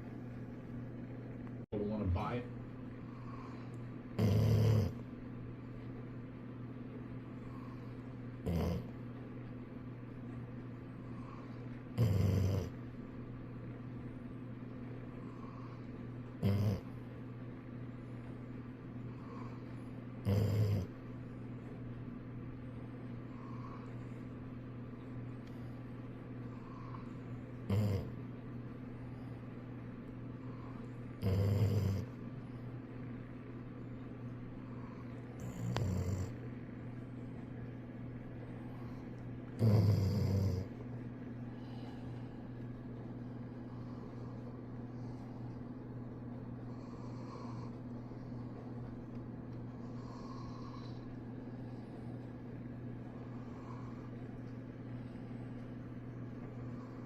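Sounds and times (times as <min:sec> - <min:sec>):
steady low hum: 0:00.0 - 0:57.0
dog snoring: 0:03.0 - 0:05.1, 0:07.4 - 0:09.0, 0:11.0 - 0:12.9, 0:15.2 - 0:17.0, 0:19.1 - 0:21.1, 0:23.3 - 0:24.1, 0:26.5 - 0:28.2, 0:30.5 - 0:32.2, 0:34.7 - 0:36.5, 0:39.6 - 0:40.9, 0:46.7 - 0:47.8, 0:49.8 - 0:51.1, 0:53.3 - 0:54.2.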